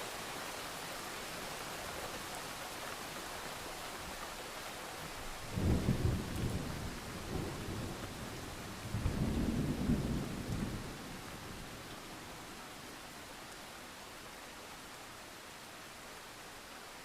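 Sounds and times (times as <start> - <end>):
steady rain: 0.0 - 17.0
thunder rumbling: 5.6 - 11.0.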